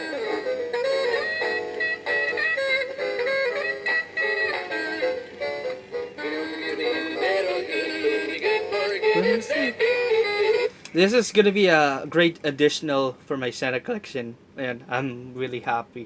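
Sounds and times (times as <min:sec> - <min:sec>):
electronic toy tune: 0:00.0 - 0:07.6, 0:08.6 - 0:10.7
synthesized singing voice: 0:06.2 - 0:10.7.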